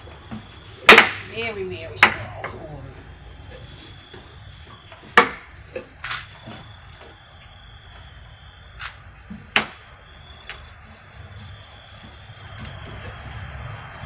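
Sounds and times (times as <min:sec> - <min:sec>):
low background rumble: 0:00.0 - 0:06.4
faint high steady tone: 0:00.6 - 0:05.1.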